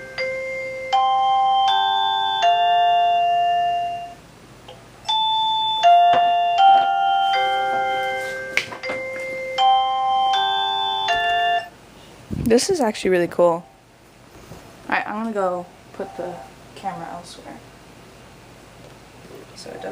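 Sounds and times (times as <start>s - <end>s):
doorbell chime melody: 0.0s - 4.2s, 5.0s - 11.7s.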